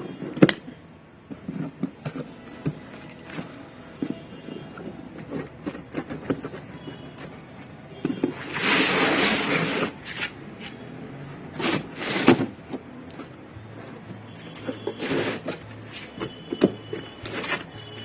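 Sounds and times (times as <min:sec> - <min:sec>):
packaging clicks and rustles: 0:01.4 - 0:10.3
cardboard tearing: 0:08.4 - 0:10.3, 0:11.6 - 0:12.5.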